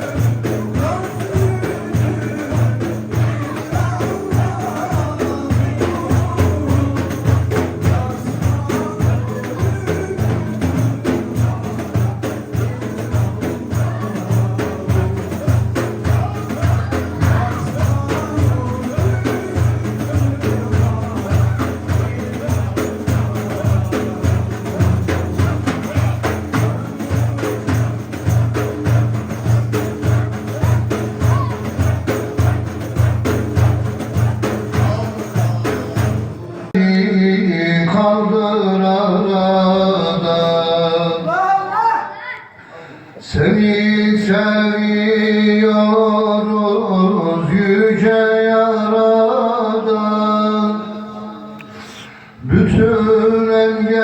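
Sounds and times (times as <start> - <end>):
frame drum with jingles: 0.0 - 36.7
hymn melody: 0.0 - 41.4.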